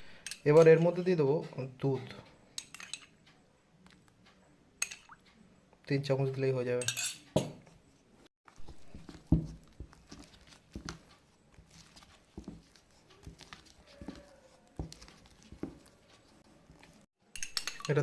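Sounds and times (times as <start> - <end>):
wet scraping of batter: 8.5 - 17.1.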